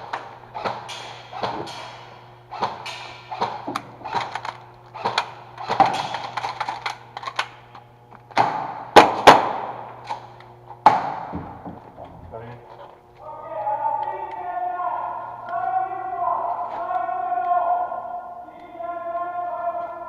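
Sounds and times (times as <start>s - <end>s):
airsoft gun shots: 0.0s - 6.6s, 8.4s - 11.5s.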